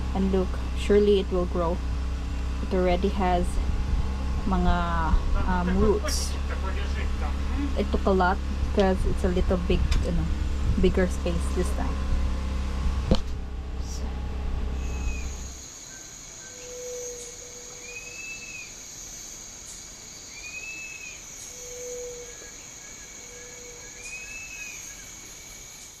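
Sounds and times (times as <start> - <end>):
low rumble: 0.0 - 15.6
bird whistling: 14.8 - 15.4
insects shrilling: 14.8 - 26.0.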